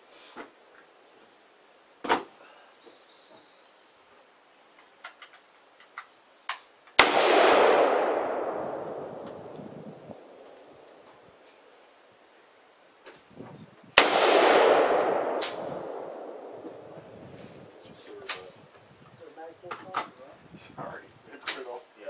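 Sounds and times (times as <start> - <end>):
rifle shots with echo: 7.0 - 11.0, 14.0 - 18.0.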